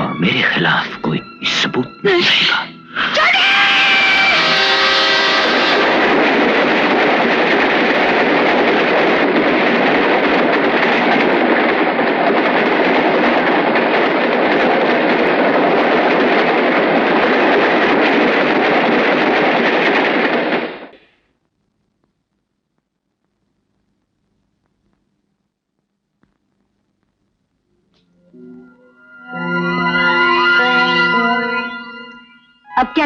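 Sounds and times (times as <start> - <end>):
pitched many-toned wail: 3.0 - 7.5, 28.4 - 33.0
loud steady rushing noise: 3.2 - 20.9.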